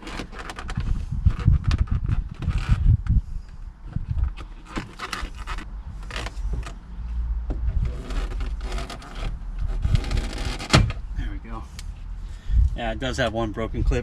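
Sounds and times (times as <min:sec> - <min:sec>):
plastic scraping on plastic: 0:00.0 - 0:03.1, 0:03.9 - 0:06.8, 0:07.6 - 0:11.0.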